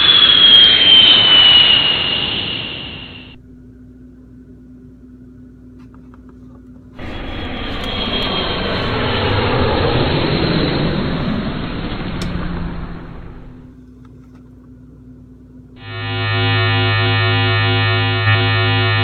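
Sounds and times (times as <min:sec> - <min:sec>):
jet aircraft roar: 0:00.0 - 0:03.6, 0:07.0 - 0:13.7, 0:15.8 - 0:19.0
low steady hum: 0:06.4 - 0:19.0.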